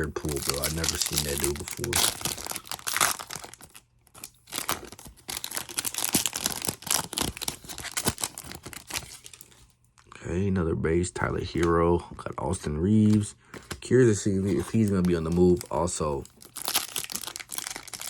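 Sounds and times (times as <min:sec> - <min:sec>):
wrapper being torn open: 0:00.0 - 0:10.1, 0:14.5 - 0:18.0.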